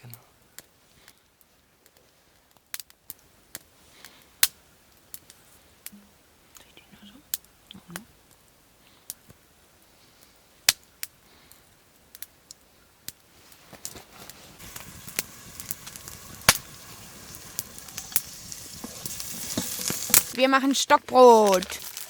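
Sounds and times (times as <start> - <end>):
kindling crackling and popping: 0.0 - 22.0
hiss of flames: 13.2 - 22.0.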